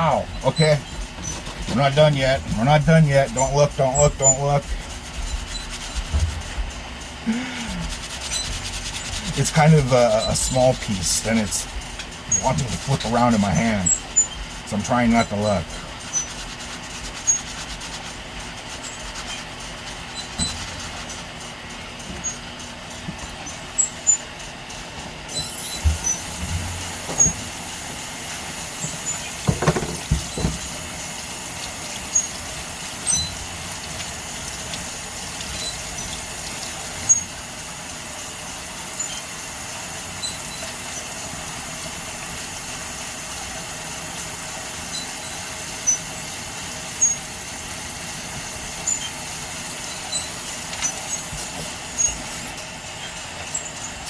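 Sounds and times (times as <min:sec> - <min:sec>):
tap water running: 0:00.0 - 0:54.0
stone slab being scrubbed: 0:07.6 - 0:11.4, 0:15.0 - 0:19.5.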